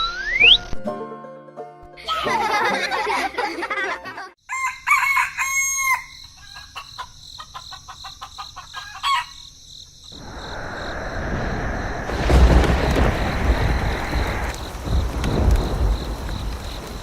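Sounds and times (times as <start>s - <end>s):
rooster crowing: 4.4s - 9.5s
rooster clucking: 5.1s - 9.4s
steady rush of noise: 10.2s - 17.0s.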